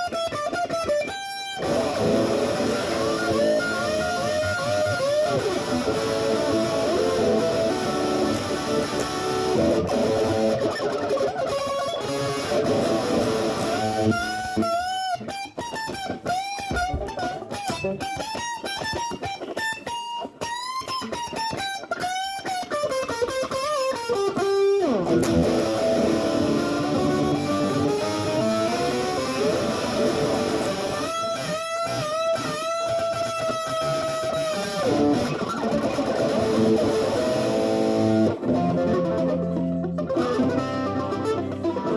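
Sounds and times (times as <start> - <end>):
instrumental rock music: 0.0 - 41.9
lead guitar bending notes: 0.0 - 41.9.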